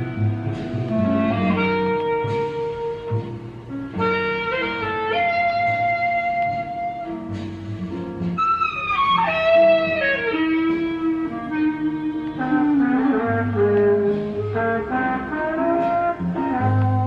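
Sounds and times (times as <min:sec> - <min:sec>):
instrumental music: 0:00.0 - 0:17.0.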